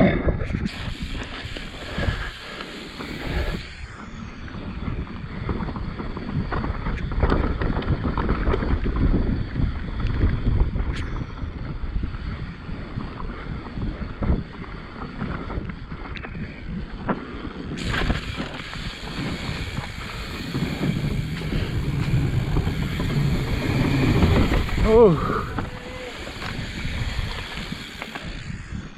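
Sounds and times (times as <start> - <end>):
wind buffeting microphone: 0.0 - 28.9
bike knocking and rattling: 4.8 - 28.9
tyres rumbling on dirt: 17.8 - 28.4.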